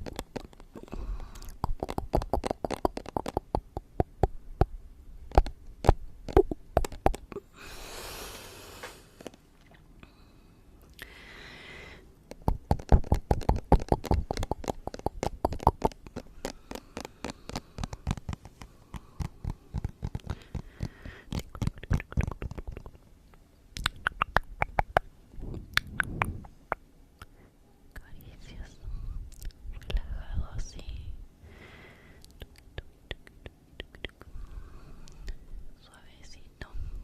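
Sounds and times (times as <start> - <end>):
breathy hiss: 7.5 - 9.4, 10.1 - 12.1, 20.2 - 21.3, 31.4 - 32.2.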